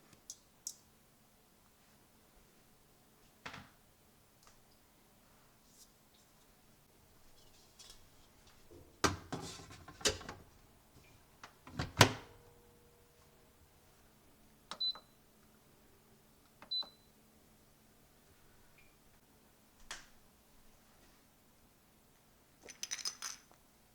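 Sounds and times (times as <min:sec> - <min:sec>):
objects knocking and clattering: 0:08.7 - 0:10.4, 0:22.6 - 0:23.6.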